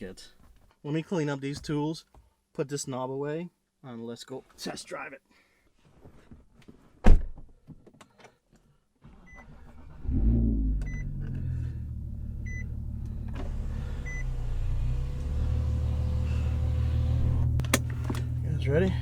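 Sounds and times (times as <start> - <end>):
car engine starting and idling: 9.1 - 19.0
dashboard warning chime beeping: 12.4 - 13.3, 14.0 - 14.3.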